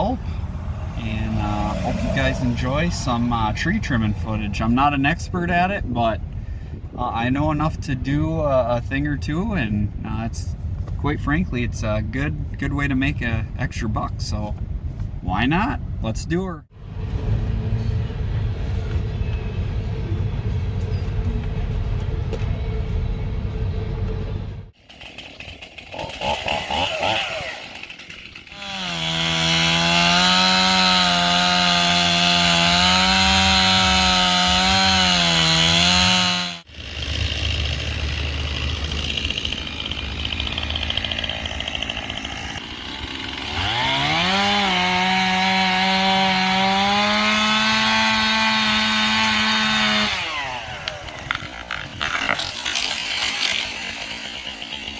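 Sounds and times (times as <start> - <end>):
chainsaw cutting at full throttle: 0.0 - 3.4, 24.8 - 54.9
low rumble: 16.7 - 24.7.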